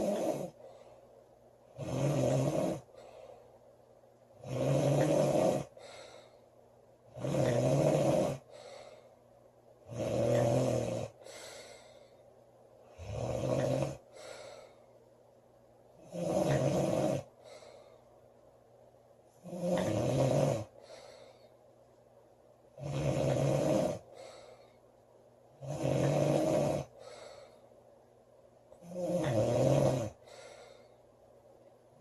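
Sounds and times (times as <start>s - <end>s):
woman snoring: 0.0s - 0.6s, 1.7s - 3.0s, 4.4s - 6.1s, 7.1s - 8.8s, 9.9s - 11.8s, 12.9s - 14.7s, 16.0s - 17.3s, 19.4s - 20.8s, 22.8s - 24.1s, 25.6s - 27.0s, 28.8s - 30.8s
faint breath sound: 0.0s - 1.4s, 2.8s - 3.8s, 5.6s - 6.8s, 8.4s - 9.6s, 11.1s - 13.0s, 14.0s - 15.3s, 17.2s - 18.4s, 20.6s - 21.9s, 24.0s - 25.1s, 26.8s - 28.0s, 30.1s - 31.3s.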